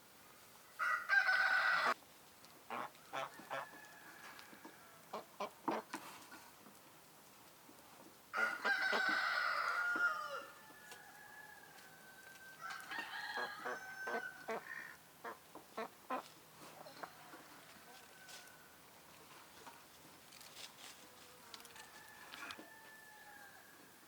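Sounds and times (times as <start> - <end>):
rooster crowing: 0.8 - 2.0, 8.4 - 14.8, 16.9 - 18.8, 21.7 - 24.0.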